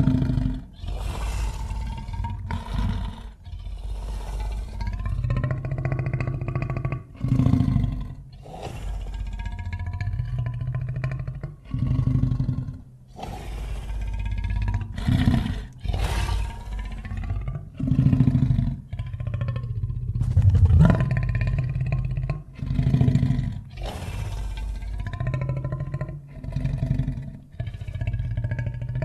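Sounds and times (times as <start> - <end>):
monster roar: 20.2 - 22.1.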